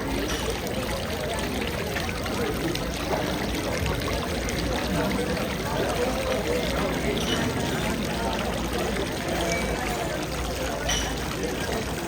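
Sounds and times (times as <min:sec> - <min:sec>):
hubbub of indistinct voices: 0:00.0 - 0:12.0.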